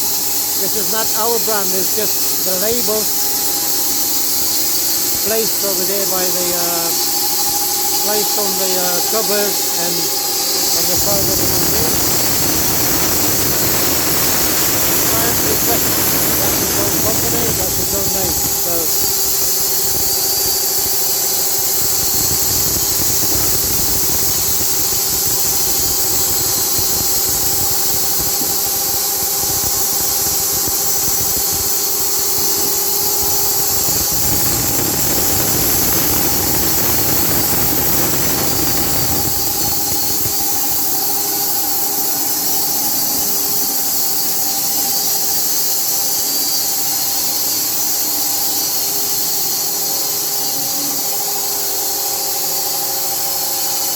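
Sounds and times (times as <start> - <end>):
band sawmill whining: 0.0 - 41.2.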